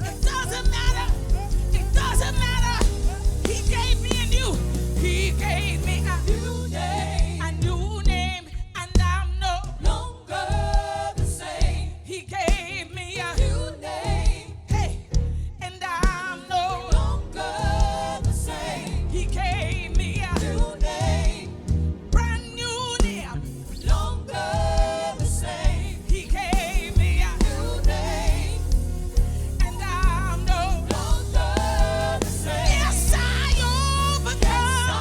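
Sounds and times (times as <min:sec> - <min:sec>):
band with steady beat: 0:00.0 - 0:08.3, 0:17.8 - 0:35.0
backing singers: 0:00.0 - 0:08.7, 0:09.6 - 0:35.0
person singing with vibrato: 0:00.0 - 0:21.5, 0:22.3 - 0:35.0.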